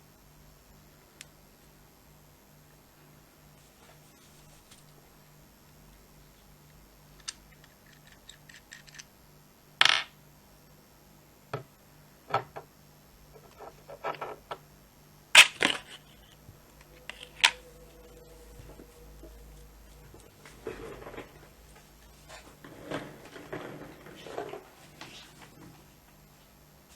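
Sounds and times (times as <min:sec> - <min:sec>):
small hard parts clicking and clinking: 0:07.2 - 0:09.1.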